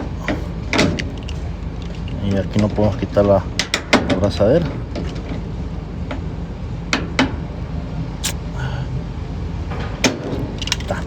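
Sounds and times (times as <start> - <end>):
hand tools clicking and knocking: 0.0 - 5.4, 10.0 - 11.0
steady low hum: 0.0 - 11.0.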